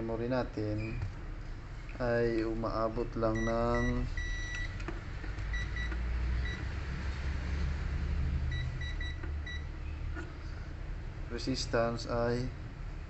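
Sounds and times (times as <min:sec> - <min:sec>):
multimeter beeping: 0:03.3 - 0:04.8, 0:05.5 - 0:06.6, 0:08.5 - 0:09.7.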